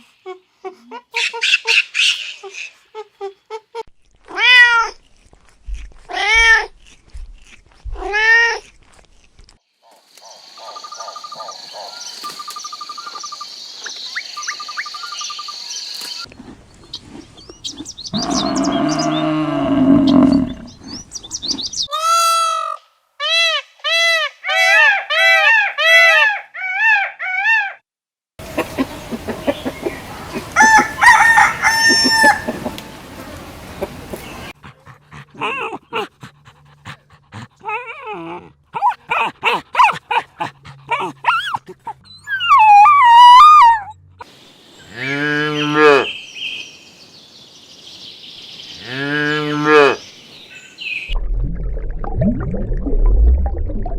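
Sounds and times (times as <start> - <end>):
chickens calling: 28.4 - 34.6
rooster crowing: 30.3 - 33.0.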